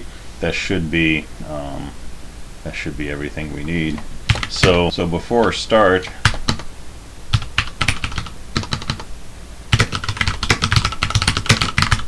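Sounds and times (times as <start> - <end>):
typing on a keyboard: 4.3 - 4.8, 6.2 - 6.7, 7.3 - 9.1, 9.7 - 12.0.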